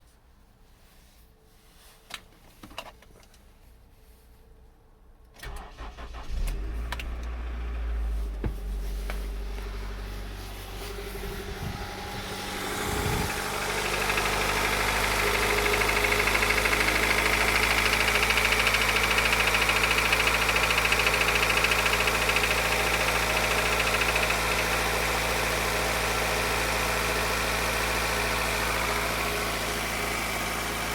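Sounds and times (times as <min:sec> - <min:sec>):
car engine cranking and starting: 0:05.4 - 0:30.9
car engine idling with knock: 0:08.1 - 0:10.0, 0:13.2 - 0:25.5.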